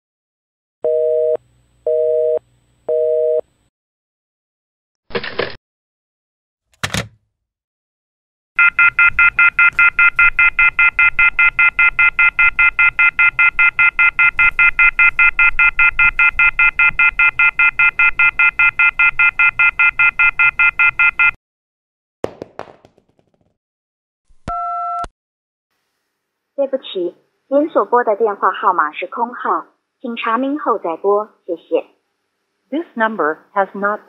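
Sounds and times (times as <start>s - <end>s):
telephone off-hook warning beeps: 8.6s - 21.4s.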